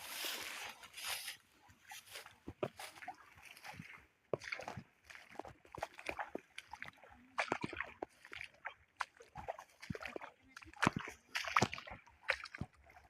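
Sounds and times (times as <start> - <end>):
water splashing and sloshing: 0.0 - 13.0.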